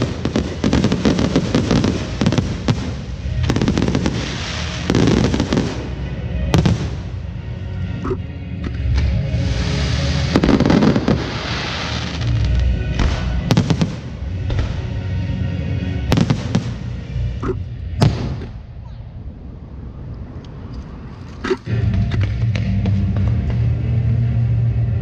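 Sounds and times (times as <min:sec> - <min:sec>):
fireworks bangs: 0:00.0 - 0:07.3, 0:09.3 - 0:15.0, 0:16.1 - 0:17.0
fireworks hissing crackle: 0:00.0 - 0:07.3, 0:09.0 - 0:14.8
low music: 0:00.0 - 0:21.0, 0:21.6 - 0:25.0.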